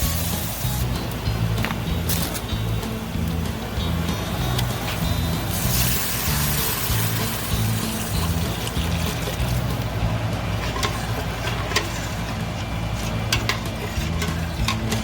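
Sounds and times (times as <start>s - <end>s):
background music with bass line: 0.0s - 15.0s
utensil clinking against pot: 13.0s - 15.0s.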